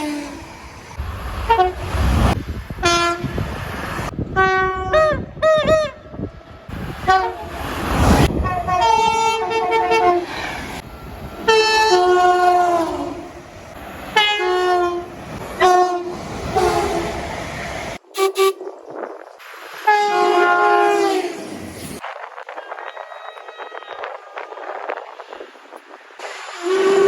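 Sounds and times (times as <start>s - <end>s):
train running rumble: 0.0s - 18.0s.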